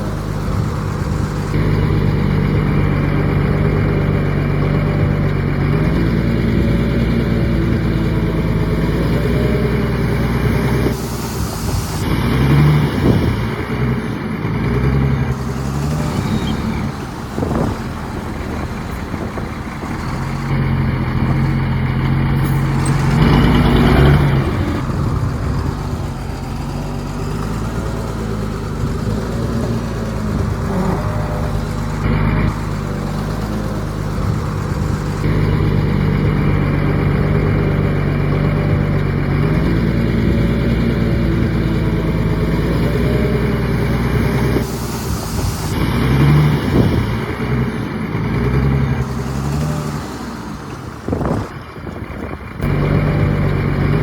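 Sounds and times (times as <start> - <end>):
heavy diesel engine running: 0.0 - 54.0
short hiss: 10.9 - 12.2, 44.6 - 45.8.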